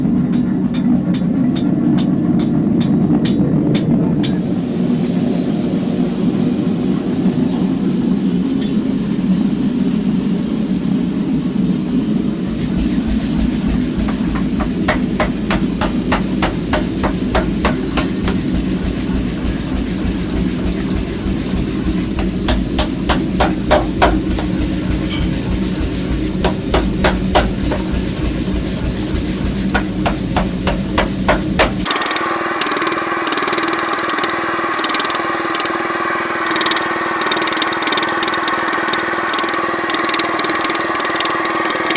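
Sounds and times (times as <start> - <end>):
steady machine hum: 0.0 - 41.9
hammer blows on iron: 12.8 - 28.5, 29.1 - 35.8.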